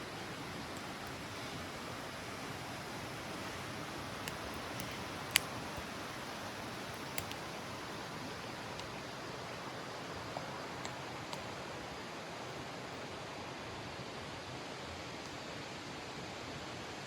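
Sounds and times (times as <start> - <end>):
campfire crackling and popping: 0.0 - 12.0.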